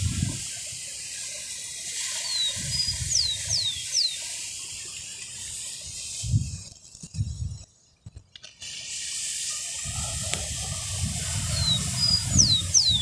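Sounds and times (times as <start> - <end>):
steady high hiss: 0.0 - 7.8, 8.4 - 13.0
songbird singing: 2.2 - 5.0, 10.6 - 13.0.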